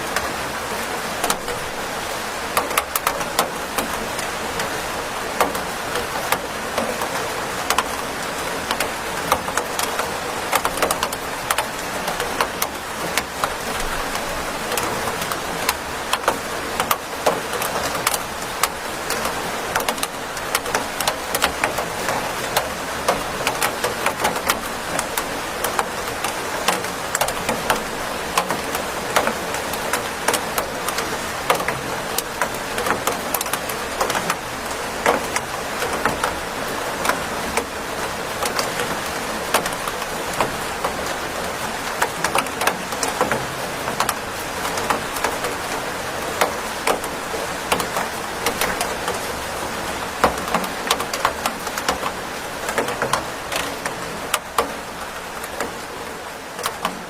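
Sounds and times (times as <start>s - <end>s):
rain drops pattering on hard surface: 0.0s - 57.0s.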